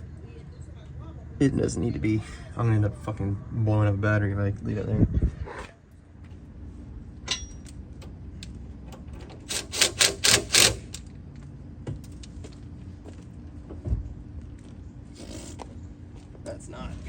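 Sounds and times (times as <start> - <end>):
steady low hum: 0.0 - 17.0
sharp metallic tool clicks: 9.5 - 11.0.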